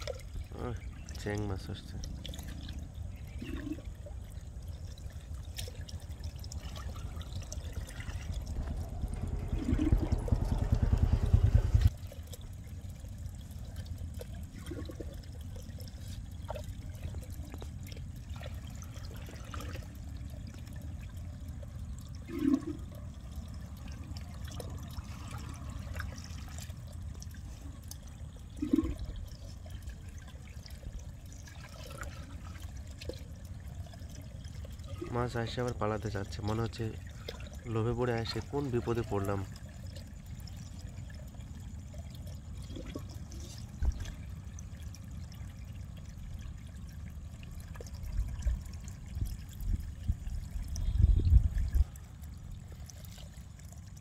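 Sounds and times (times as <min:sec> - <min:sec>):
rush of water: 0:00.0 - 0:41.3
water trickling through a channel: 0:00.0 - 0:54.0.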